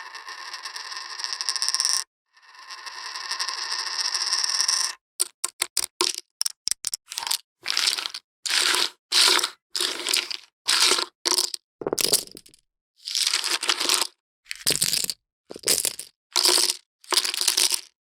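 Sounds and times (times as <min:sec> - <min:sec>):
poker chips clacking: 0:05.2 - 0:08.2, 0:11.4 - 0:12.6, 0:14.6 - 0:17.9.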